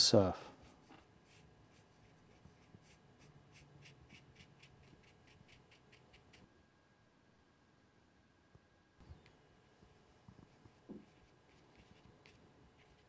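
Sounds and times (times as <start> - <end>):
brush strokes on paper: 0.5 - 6.4, 9.7 - 13.0.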